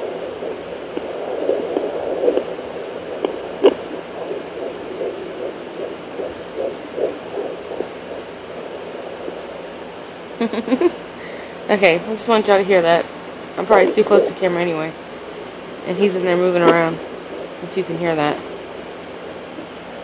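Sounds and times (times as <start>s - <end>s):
fetal heartbeat whooshing pulses: 0.0s - 11.0s, 13.6s - 20.0s.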